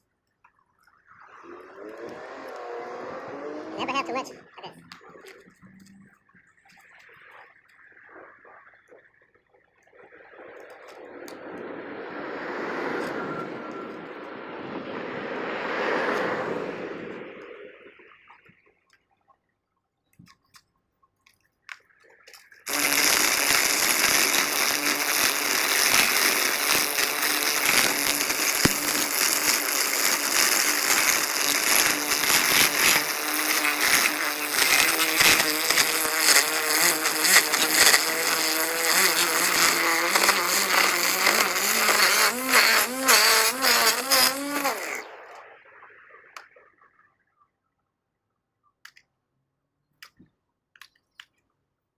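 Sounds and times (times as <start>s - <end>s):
string trimmer buzzing: 1.7s - 5.5s, 22.7s - 45.1s.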